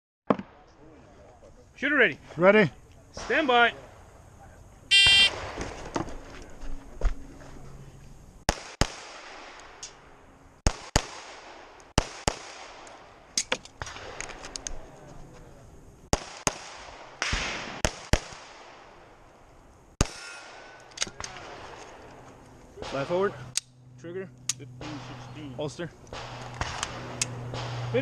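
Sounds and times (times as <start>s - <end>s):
pistol shots with echo: 16.1s - 19.1s, 26.1s - 28.0s.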